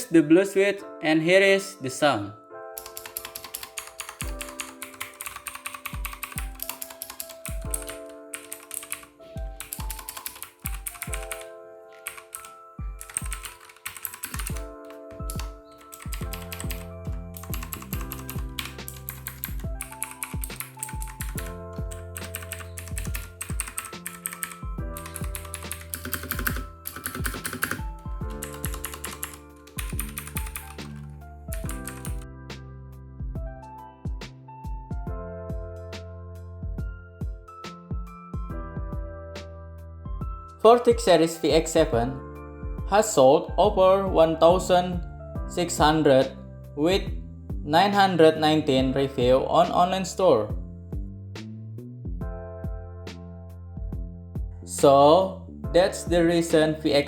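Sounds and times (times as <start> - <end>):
background music: 0.0 - 57.0
mechanical keyboard typing: 2.8 - 32.2.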